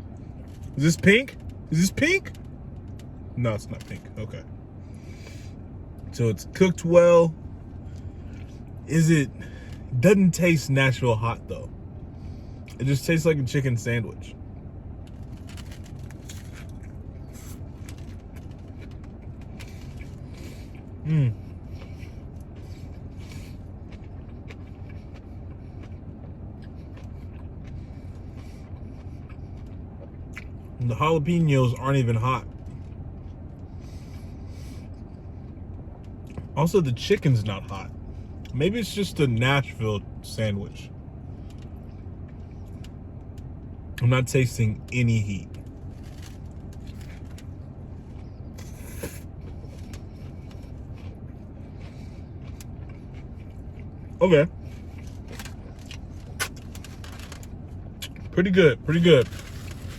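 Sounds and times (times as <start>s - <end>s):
car engine idling: 0.0s - 59.9s
steady low hum: 0.0s - 59.9s
quiet eating sounds: 15.0s - 30.9s, 44.8s - 59.9s
food handling clicks and rustles: 45.5s - 47.5s, 55.0s - 57.6s, 59.0s - 59.9s.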